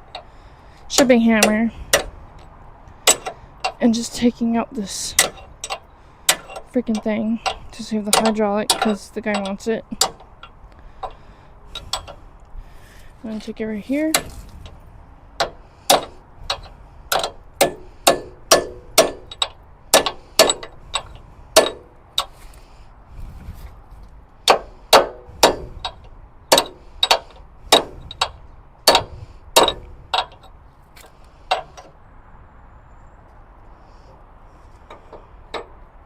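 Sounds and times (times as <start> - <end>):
hammer striking steel pin: 15.4 - 22.3, 24.5 - 30.4.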